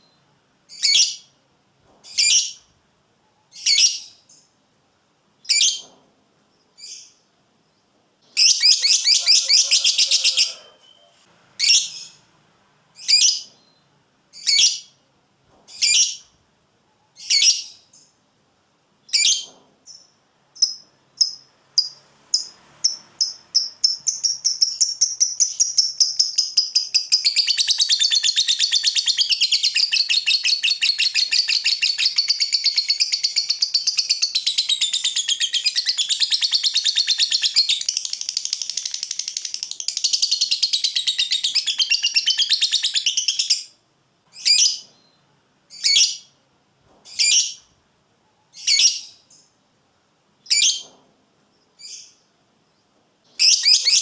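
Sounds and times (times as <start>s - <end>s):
bird chirping: 0.0s - 4.6s, 5.4s - 12.3s, 12.9s - 18.2s, 19.0s - 46.4s, 47.1s - 49.6s, 50.4s - 54.0s
bird chattering trill: 8.4s - 12.1s.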